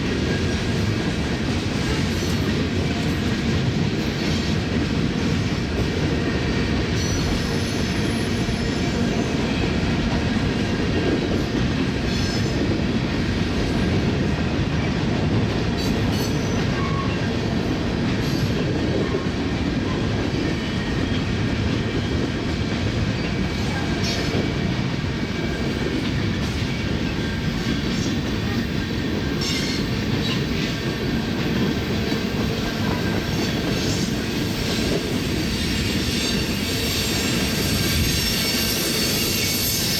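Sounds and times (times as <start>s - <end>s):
train wheels rumbling on rail: 0.0s - 39.9s
high wheel squeals: 35.4s - 39.9s.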